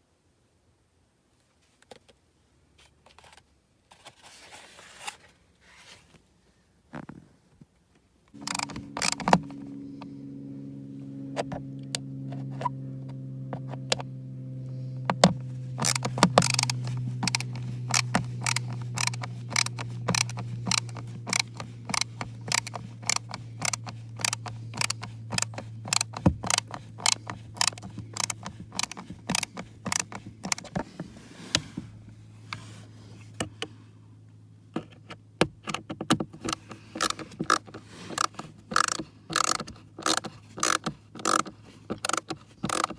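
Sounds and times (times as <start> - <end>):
ratchet clicking: 8.4 - 9.6, 15.8 - 30.8, 36.4 - 42.9
low hum: 8.4 - 34.6.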